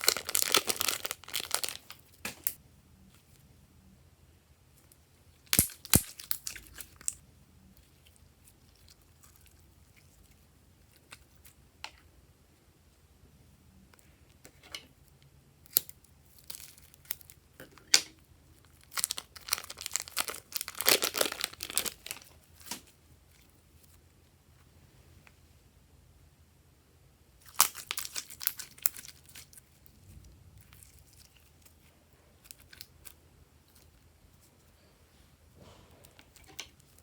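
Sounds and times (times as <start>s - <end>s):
slime crackling by hand: 0.0s - 2.6s, 18.6s - 23.6s.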